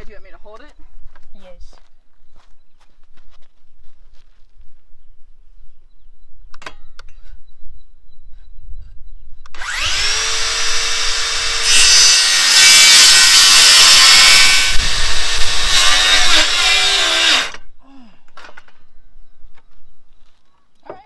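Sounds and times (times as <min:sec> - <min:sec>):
electric power tool whining: 0:09.6 - 0:17.6.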